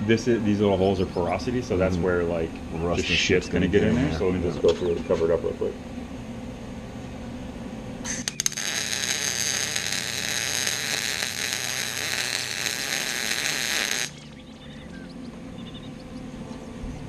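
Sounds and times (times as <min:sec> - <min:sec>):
welder arc crackling and hissing: 0:08.0 - 0:14.4.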